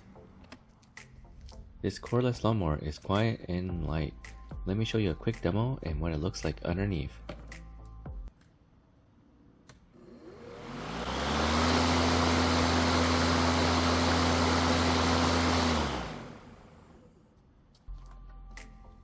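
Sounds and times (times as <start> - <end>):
lawn mower motor and blade: 10.1 - 17.0.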